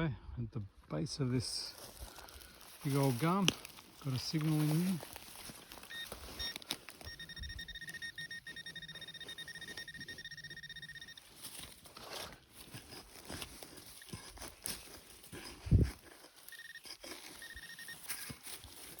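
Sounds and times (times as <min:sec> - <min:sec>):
metal detector beeps: 0:02.8 - 0:03.4, 0:04.0 - 0:19.0
metal detector high tone: 0:04.0 - 0:19.0.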